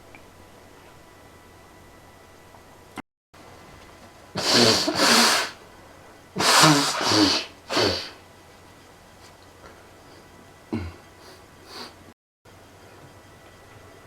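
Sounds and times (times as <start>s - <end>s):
man sneezing hard: 4.4s - 5.6s, 6.4s - 8.2s.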